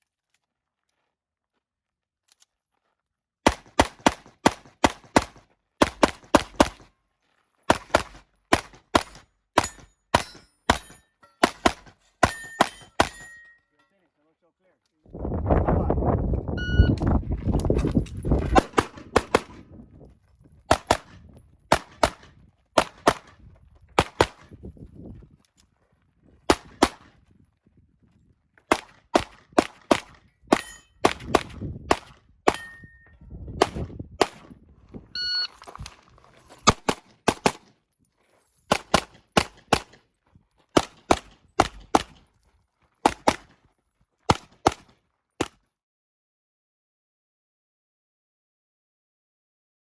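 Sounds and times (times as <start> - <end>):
pistol shots: 3.4 - 6.9, 7.7 - 13.4, 18.4 - 19.7, 20.7 - 23.4, 24.0 - 24.5, 26.5 - 27.1, 28.7 - 33.0, 33.6 - 34.5, 36.6 - 37.7, 38.7 - 40.0, 40.8 - 42.2, 43.0 - 43.6
metallic dings on steel targets: 9.0 - 14.0, 30.5 - 31.0, 32.5 - 33.3
short electronic beep: 16.6 - 17.0, 35.1 - 35.6.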